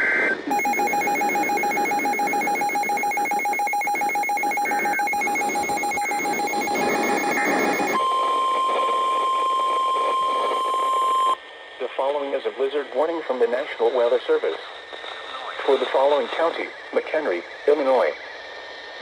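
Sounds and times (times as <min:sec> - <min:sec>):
rapidly pulsing electronic beep: 0:00.5 - 0:11.4
steady alarm tone: 0:00.5 - 0:11.4
radio hiss: 0:04.2 - 0:19.0.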